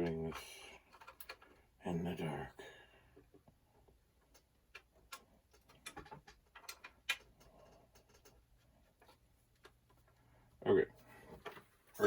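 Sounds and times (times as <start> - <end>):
small plastic clicks and scrapes: 4.2 - 10.1.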